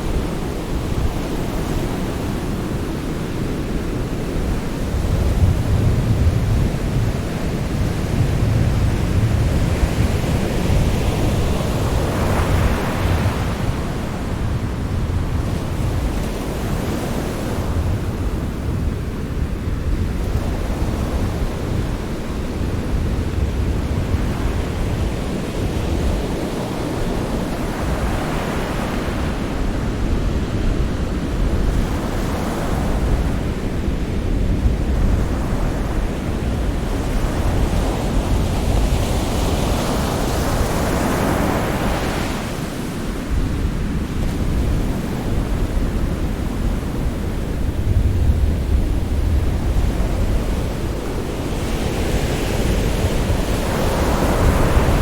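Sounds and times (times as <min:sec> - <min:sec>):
waves breaking: 0:34.8 - 0:55.0.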